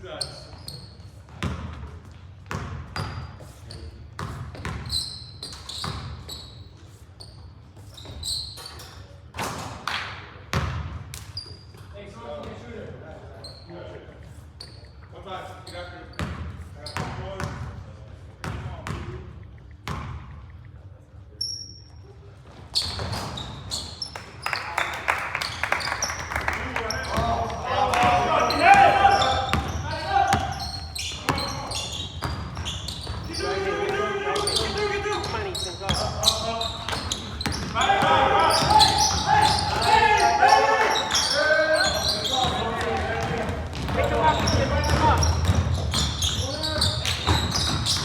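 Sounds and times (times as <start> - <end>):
sneakers squeaking: 0.0 - 9.8, 10.5 - 48.0
basketball bouncing: 4.2 - 4.9, 27.1 - 31.6, 32.2 - 33.3, 36.8 - 40.2, 42.3 - 48.0.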